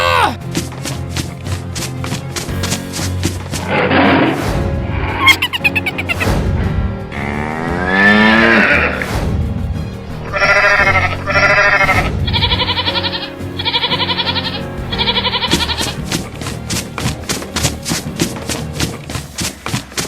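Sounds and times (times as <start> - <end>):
background music: 0.0 - 20.0
quavering bleat-like animal calls: 7.1 - 9.1, 10.2 - 16.0.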